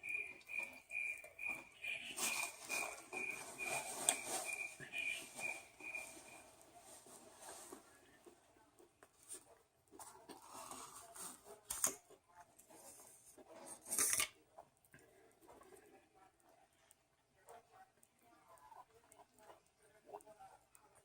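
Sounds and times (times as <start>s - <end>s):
wrapper rustling and tearing: 2.1s - 7.8s.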